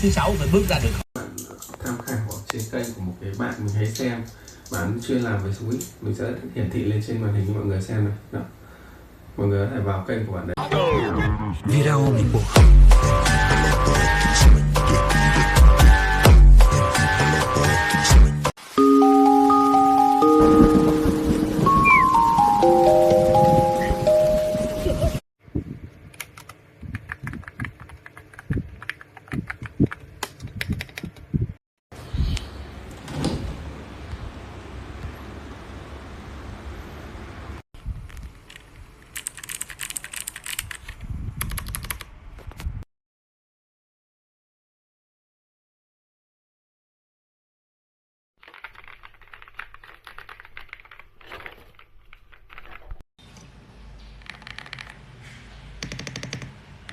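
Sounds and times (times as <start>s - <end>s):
mechanical keyboard typing: 26.1s - 31.2s, 38.5s - 42.1s, 48.4s - 52.9s, 54.2s - 55.0s, 55.8s - 56.9s
mechanical keyboard key clacks: 38.1s - 42.1s, 54.2s - 55.0s.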